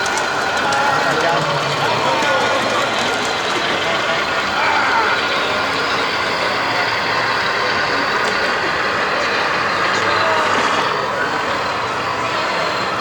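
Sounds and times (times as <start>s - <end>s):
model tank mechanical running: 0.0s - 13.0s.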